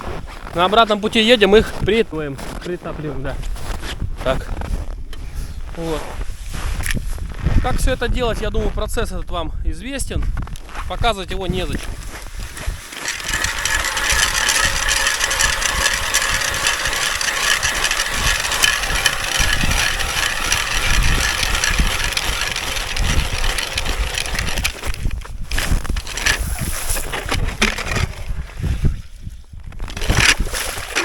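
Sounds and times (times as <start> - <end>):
wind buffeting microphone: 3.6 - 31.0
small petrol engine running: 12.4 - 28.2.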